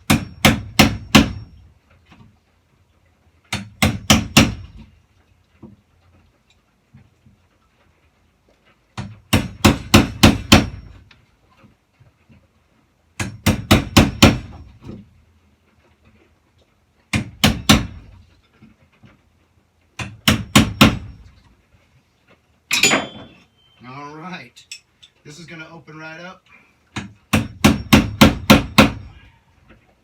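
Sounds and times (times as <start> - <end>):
hammer striking chisel into wood: 0.0 - 1.6, 3.5 - 4.9, 9.0 - 11.0, 13.2 - 14.7, 17.1 - 18.1, 20.0 - 21.3, 27.0 - 29.1.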